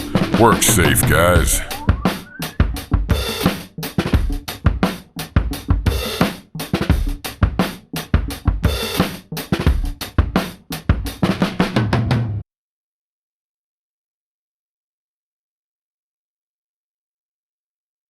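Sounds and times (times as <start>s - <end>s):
drum kit beat: 0.0s - 11.6s.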